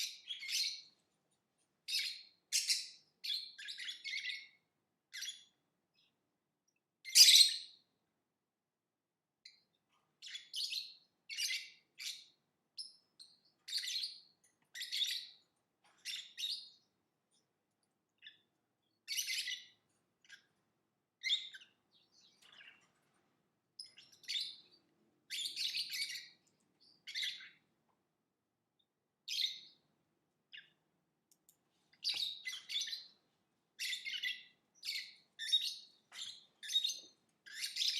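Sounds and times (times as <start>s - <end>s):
lovebird chirping: 0.0s - 1.0s, 1.9s - 6.1s, 7.0s - 7.8s, 10.2s - 15.4s, 16.0s - 17.4s, 18.2s - 20.5s, 21.2s - 22.8s, 23.8s - 27.6s, 29.2s - 29.8s, 32.0s - 33.2s, 33.8s - 37.9s.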